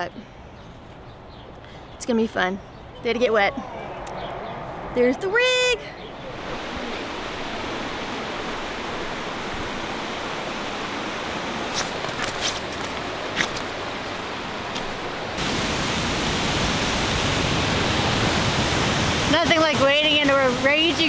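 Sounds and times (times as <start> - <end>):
fast-flowing water rushing: 6.4 - 21.0.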